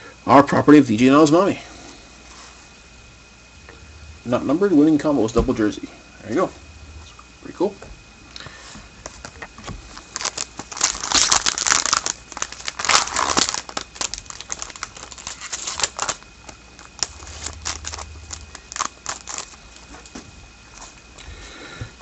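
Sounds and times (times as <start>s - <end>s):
foil wrapper crinkling: 9.0s - 20.2s.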